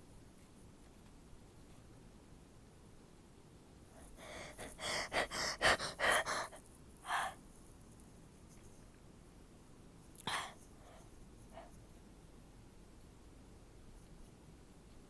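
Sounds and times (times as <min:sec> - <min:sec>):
person gasping in-breaths: 0:04.0 - 0:07.4, 0:10.3 - 0:11.0.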